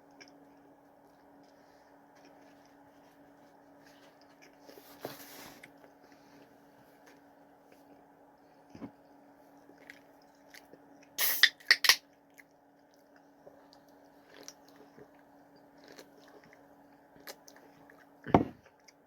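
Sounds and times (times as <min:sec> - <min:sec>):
quiet chewing: 0:00.0 - 0:11.2, 0:12.1 - 0:19.0
crunchy chewing: 0:09.5 - 0:11.2, 0:12.1 - 0:19.0.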